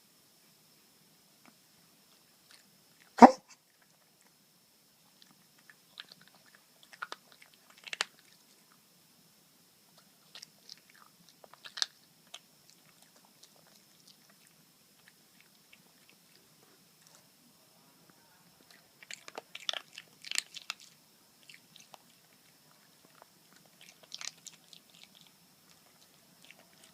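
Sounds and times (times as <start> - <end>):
puppy chewing and biting: 5.1 - 8.8, 9.8 - 17.4, 18.6 - 26.9.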